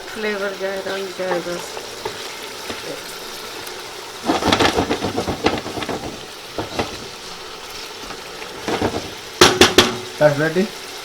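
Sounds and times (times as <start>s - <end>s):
chicken sizzling in a pot: 0.0s - 11.0s
spoon scraping and knocking pot: 1.3s - 3.0s, 4.2s - 7.4s, 8.0s - 10.2s.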